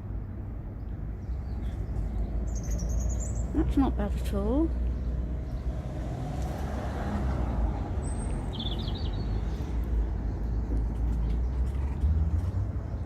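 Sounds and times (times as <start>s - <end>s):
bird chirp and trill: 0.8s - 3.9s, 8.0s - 9.6s.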